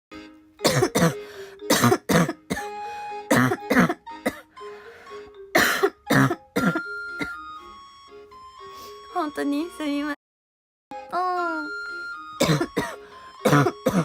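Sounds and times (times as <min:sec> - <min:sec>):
soft background music: 0:00.1 - 0:10.2, 0:10.9 - 0:14.0
woman coughing hard: 0:00.6 - 0:02.7, 0:03.3 - 0:04.4, 0:05.5 - 0:07.4, 0:12.4 - 0:14.0.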